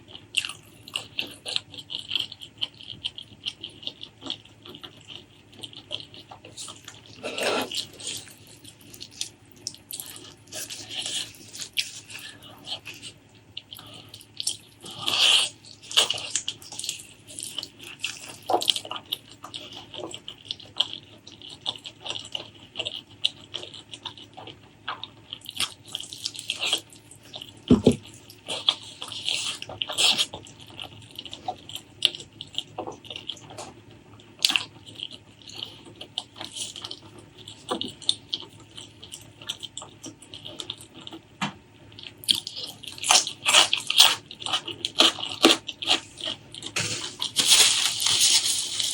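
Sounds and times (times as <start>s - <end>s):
wet chewing mouth sounds: 0.0s - 48.9s.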